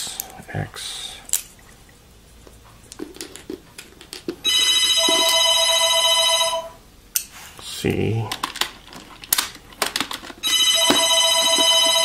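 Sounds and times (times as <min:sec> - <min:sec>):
loud electronic tone: 0:04.5 - 0:06.8, 0:10.4 - 0:12.0.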